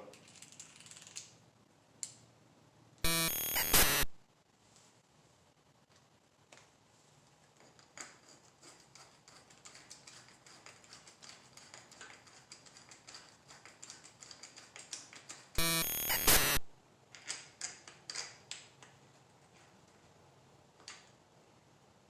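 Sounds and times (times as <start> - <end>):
loud buzzing burst: 3.0 - 4.2, 15.6 - 16.7.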